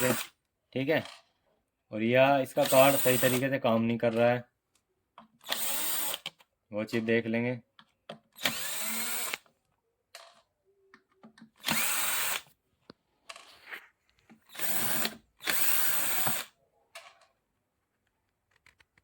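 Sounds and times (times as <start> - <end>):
electric screwdriver spinning: 0.0 - 0.3, 2.6 - 3.4, 5.5 - 6.2, 8.4 - 9.4, 11.6 - 12.4, 14.5 - 16.5.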